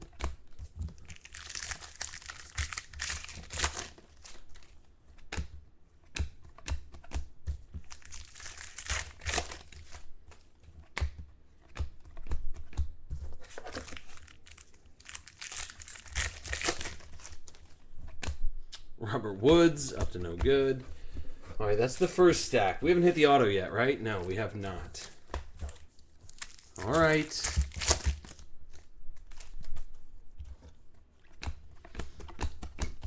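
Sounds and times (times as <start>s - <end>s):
foil wrappers crinkling: 0.9s - 4.7s, 7.8s - 10.0s, 13.4s - 17.7s, 21.8s - 29.6s.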